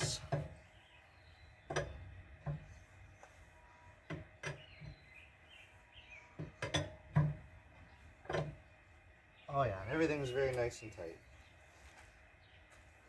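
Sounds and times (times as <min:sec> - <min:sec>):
tire iron clinking on lug nuts: 0:00.0 - 0:00.7, 0:01.6 - 0:03.3, 0:06.4 - 0:08.8.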